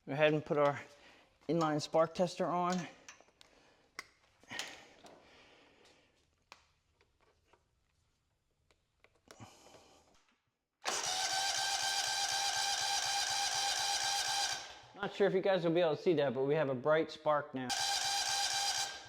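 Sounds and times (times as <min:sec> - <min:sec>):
engine cranked by electric starter: 0:10.8 - 0:14.9, 0:17.7 - 0:19.0.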